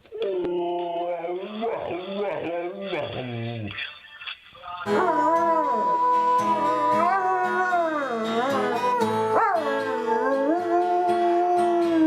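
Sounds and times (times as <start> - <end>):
dog howling: 4.9 - 12.0
music with held notes: 4.9 - 12.0.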